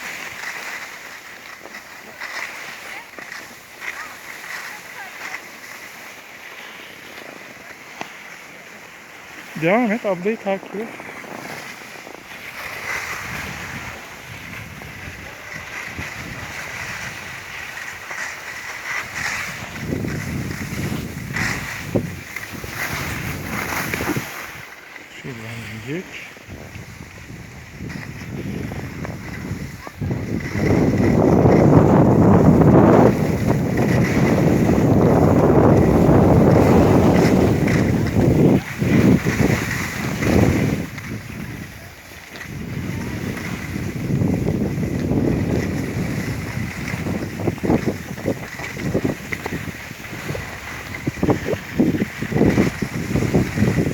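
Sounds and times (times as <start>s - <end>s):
skis scraping over snow: 0.0s - 53.9s
wind buffeting microphone: 11.1s - 18.1s, 18.8s - 24.7s, 25.9s - 53.9s.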